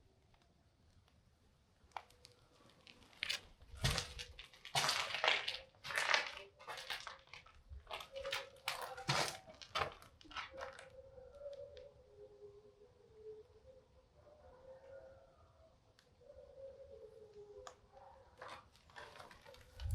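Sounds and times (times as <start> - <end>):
footsteps crunching on rubble: 2.9 - 10.8, 18.4 - 19.9.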